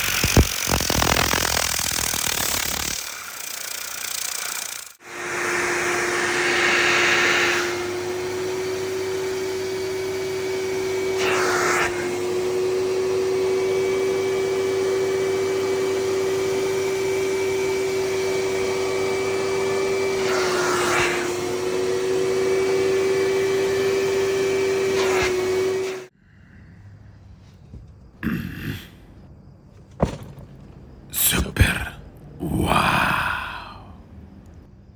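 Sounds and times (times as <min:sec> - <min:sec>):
vacuum cleaner motor whine: 0:00.0 - 0:26.2.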